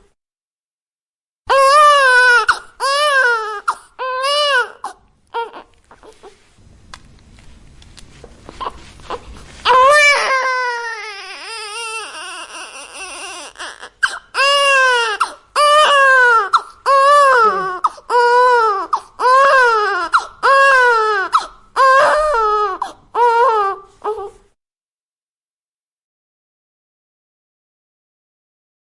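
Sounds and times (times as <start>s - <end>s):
newborn baby crying: 1.5s - 6.4s, 8.5s - 24.5s.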